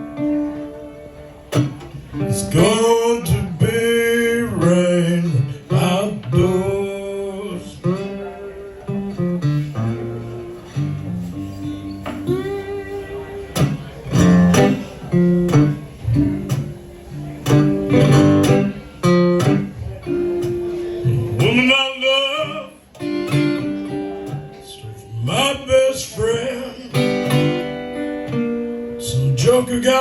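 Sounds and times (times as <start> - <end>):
acoustic guitar playing blues: 0.0 - 30.0.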